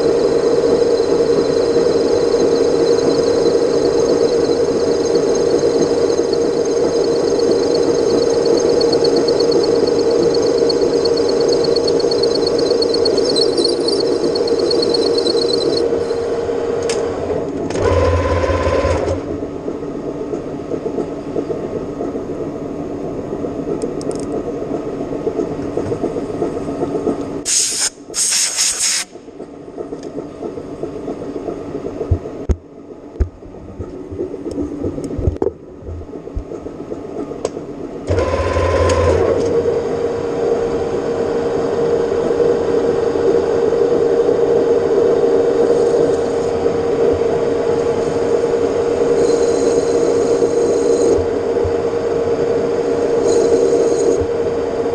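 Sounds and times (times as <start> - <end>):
metal lathe humming: 0.0 - 19.1, 38.1 - 51.5, 52.3 - 54.2
loud hissing bursts: 27.4 - 29.2.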